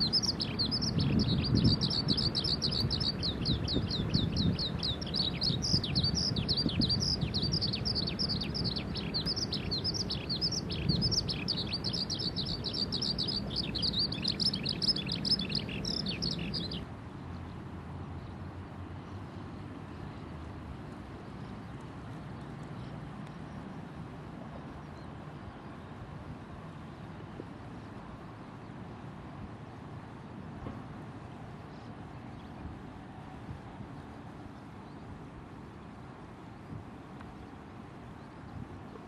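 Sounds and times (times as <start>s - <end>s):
skylark singing: 0.0s - 16.8s.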